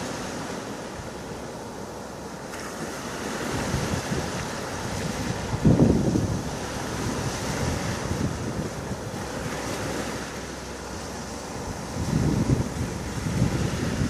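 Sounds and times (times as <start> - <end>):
sea waves washing on shore: 0.0 - 14.0
wind on microphone: 3.2 - 14.0.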